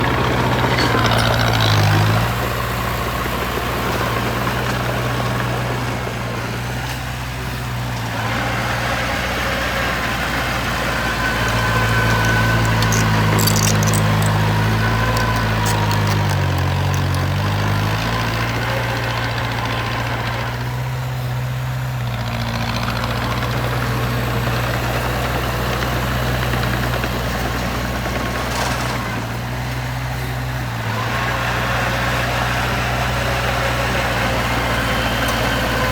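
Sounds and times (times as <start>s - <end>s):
heavy machine engine running: 0.0s - 35.9s
sharp clicks: 12.1s - 17.5s.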